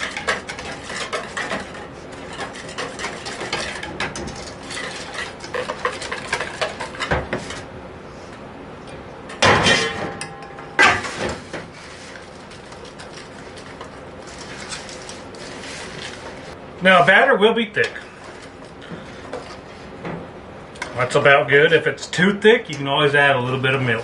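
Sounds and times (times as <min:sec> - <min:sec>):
utensil clattering against bowl: 0:00.0 - 0:07.6
utensil stirring batter in bowl: 0:00.0 - 0:07.7, 0:11.0 - 0:17.2, 0:18.1 - 0:20.0.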